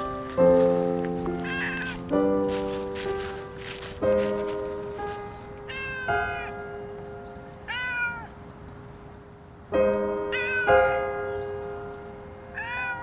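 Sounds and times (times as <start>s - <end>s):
piano music: 0.0s - 7.9s, 9.7s - 13.0s
cat meowing: 1.4s - 1.9s, 5.7s - 6.5s, 7.7s - 8.4s, 10.3s - 11.0s, 12.6s - 13.0s.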